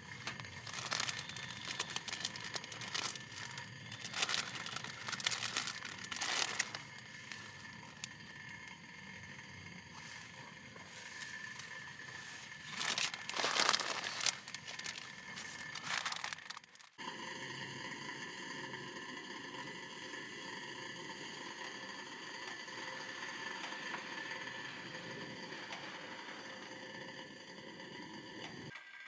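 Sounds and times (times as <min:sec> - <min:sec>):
crinkling and rustling: 0:00.0 - 0:08.5, 0:10.0 - 0:17.0.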